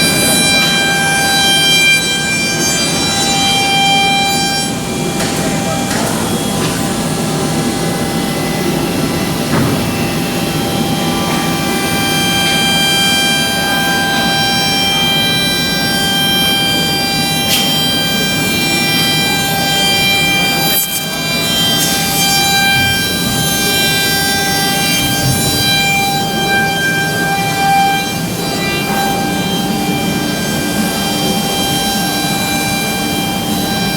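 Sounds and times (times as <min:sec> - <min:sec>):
machine spindle whine: 0:00.0 - 0:33.9
cutting noise: 0:10.8 - 0:33.9.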